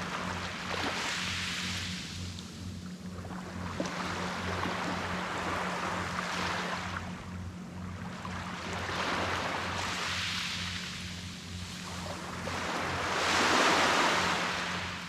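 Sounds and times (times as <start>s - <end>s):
steady low hum: 0.0s - 15.0s
ocean waves washing on beach: 8.3s - 15.0s.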